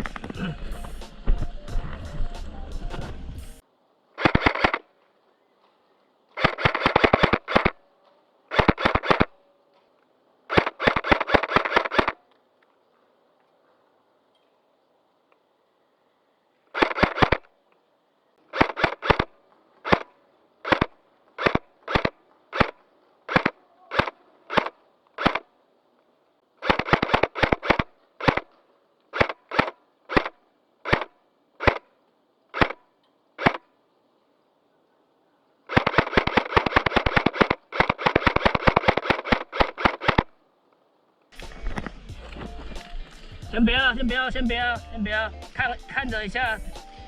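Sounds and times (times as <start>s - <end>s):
airsoft gun shots: 4.2s - 4.9s, 6.4s - 7.8s, 8.5s - 9.4s, 10.5s - 12.2s, 16.8s - 17.5s, 18.5s - 25.5s, 26.6s - 28.5s, 29.1s - 31.9s, 32.6s - 32.8s, 33.4s - 33.7s, 35.7s - 40.3s.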